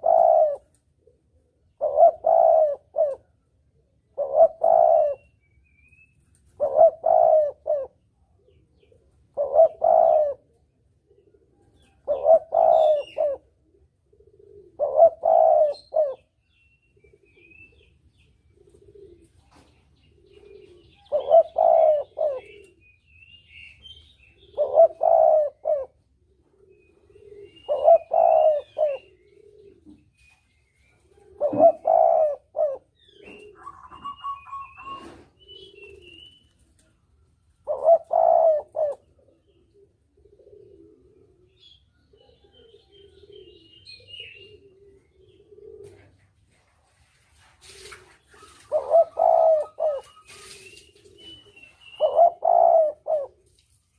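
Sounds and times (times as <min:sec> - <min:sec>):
dove cooing: 0:00.0 - 0:05.4, 0:06.4 - 0:23.0, 0:23.7 - 0:53.6.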